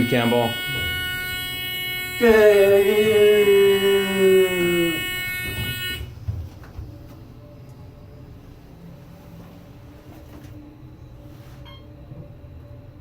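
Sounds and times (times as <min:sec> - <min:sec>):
elevator electronic buzzing tone: 0:00.0 - 0:06.2.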